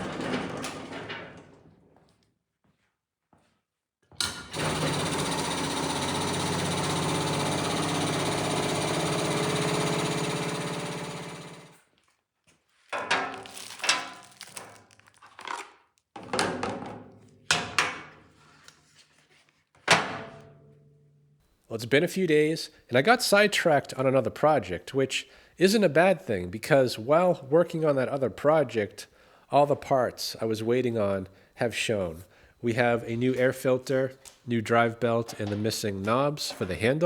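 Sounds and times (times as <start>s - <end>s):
power tool motor running: 4.5s - 11.8s.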